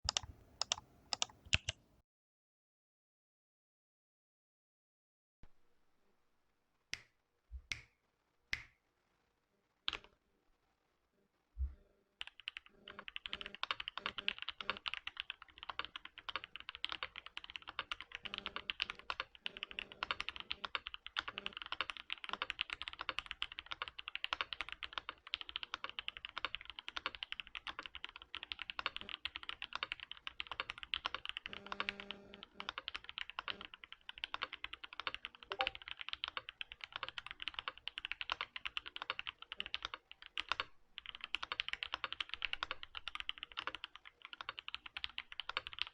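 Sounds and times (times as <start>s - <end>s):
fast typing on mechanical keyboard: 0.1s - 1.8s, 12.2s - 45.9s.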